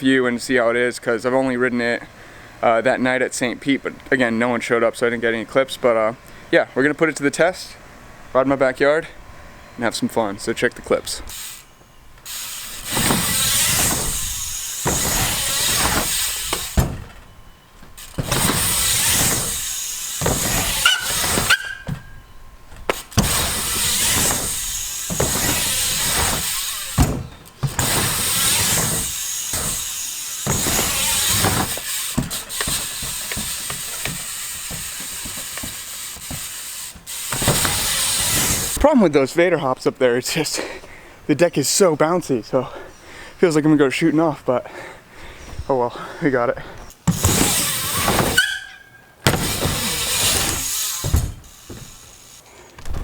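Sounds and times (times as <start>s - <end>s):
bike hub ratcheting: 11.3s - 16.9s, 18.0s - 21.9s, 22.9s - 38.8s, 47.0s - 52.5s
bike knocking on ramp: 12.2s - 38.8s, 49.3s - 52.2s.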